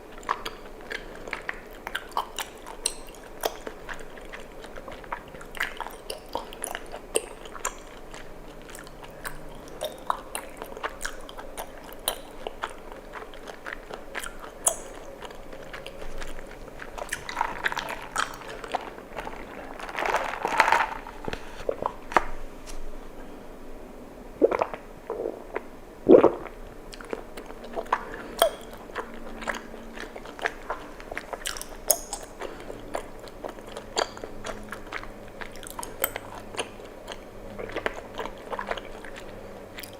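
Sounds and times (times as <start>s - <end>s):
close chewing: 0.0s - 22.3s, 26.2s - 39.9s
wet sticky mouth clicks: 0.2s - 19.6s, 24.4s - 39.9s
loud gulps: 24.3s - 30.2s.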